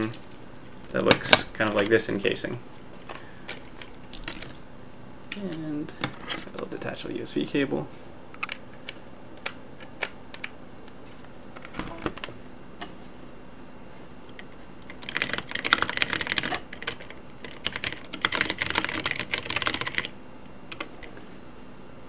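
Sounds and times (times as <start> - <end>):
fast mechanical keyboard typing: 14.8 - 21.0.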